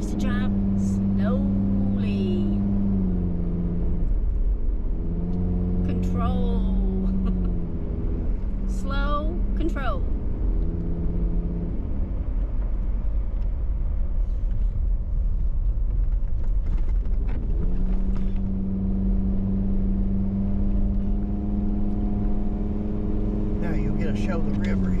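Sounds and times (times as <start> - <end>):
engine drone through broken exhaust: 0.0 - 25.0.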